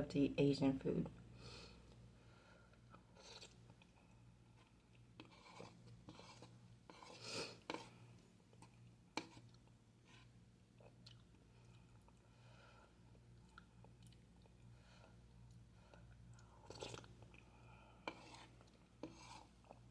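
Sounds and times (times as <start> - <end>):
low steady hum: 0.0 - 19.9
person chewing: 3.1 - 6.5, 10.8 - 12.2, 13.1 - 14.7, 15.3 - 17.5.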